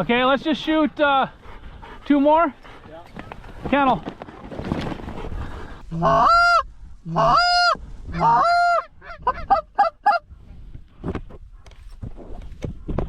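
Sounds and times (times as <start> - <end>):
goose clucking: 5.9 - 10.2
goose honking: 6.0 - 10.2.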